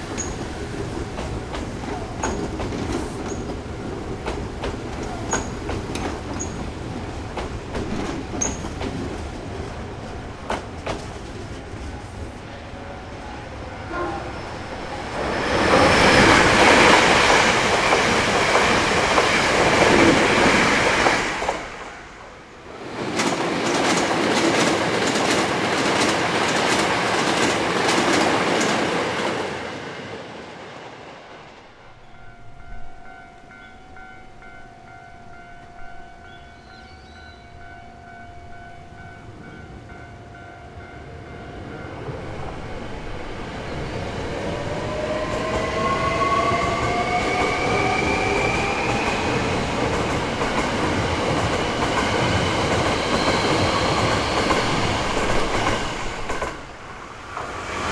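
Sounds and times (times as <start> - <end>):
train wheels clattering over rail joints: 0.0 - 12.0, 44.7 - 57.6.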